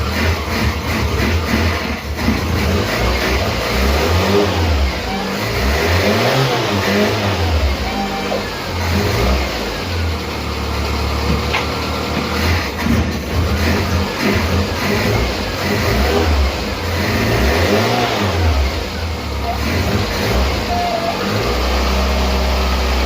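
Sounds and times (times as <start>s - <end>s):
car engine running: 0.0s - 23.0s.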